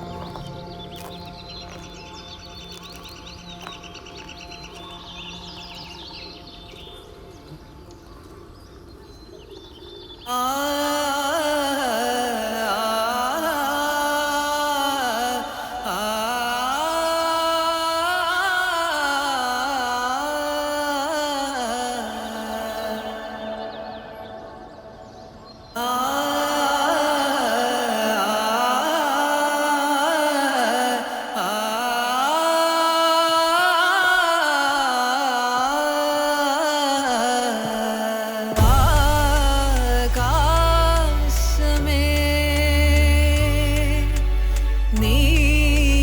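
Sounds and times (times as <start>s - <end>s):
indian classical style film score: 0.0s - 46.0s
deep bass: 38.6s - 46.0s
film music with sliding held notes: 38.6s - 46.0s.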